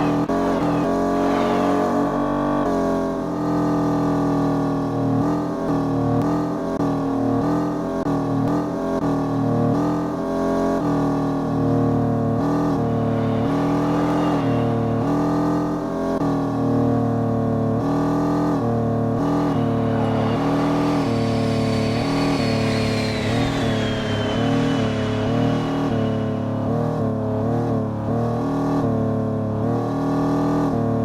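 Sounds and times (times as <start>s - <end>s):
thin high whine: 0.0s - 2.8s, 11.4s - 17.1s, 18.3s - 28.2s
road noise: 0.0s - 6.3s, 6.9s - 31.0s
car engine inside cabin: 0.0s - 31.0s.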